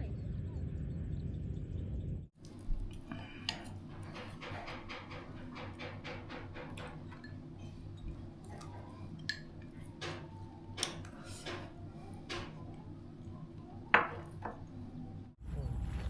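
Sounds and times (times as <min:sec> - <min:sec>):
dishes and utensils clattering: 0:03.2 - 0:11.8.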